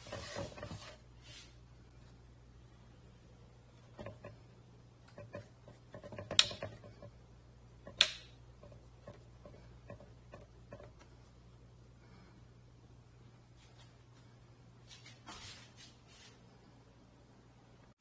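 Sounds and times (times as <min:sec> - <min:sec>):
steady low hum: 0:00.0 - 0:15.2
light clicks and knocks: 0:03.8 - 0:07.2.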